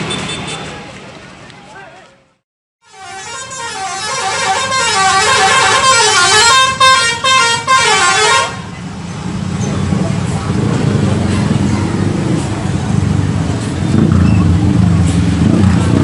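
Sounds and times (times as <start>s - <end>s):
traffic noise: 0.0s - 16.0s
bus musical horn melody: 2.8s - 8.7s.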